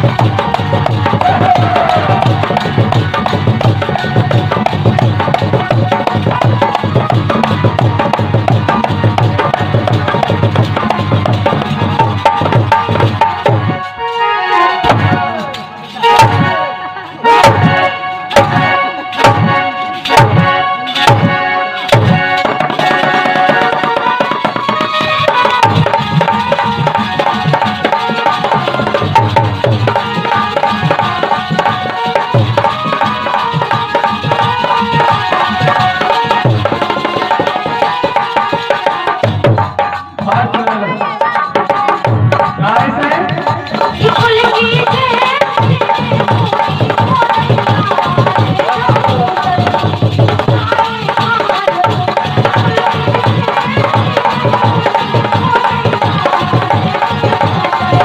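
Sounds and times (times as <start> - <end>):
hand drums playing rhythm: 0.0 - 14.0, 14.8 - 58.0
sustained melody instrument: 0.0 - 41.3.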